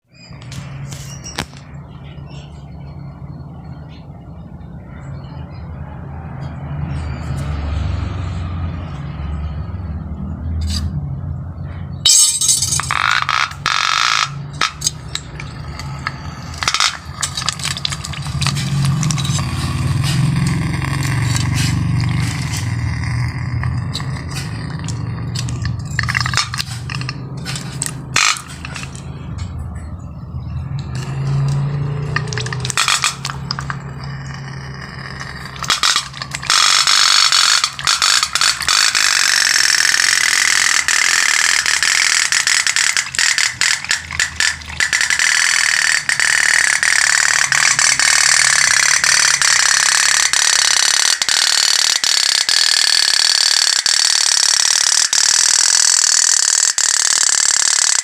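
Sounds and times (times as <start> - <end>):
toy boat steam engine putter: 12.1 - 29.6, 30.7 - 58.0.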